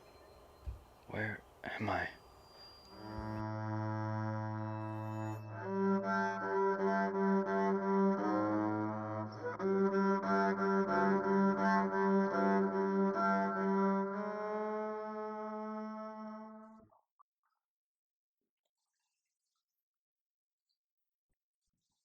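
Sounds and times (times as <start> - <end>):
bowed low strings playing: 2.9 - 16.8.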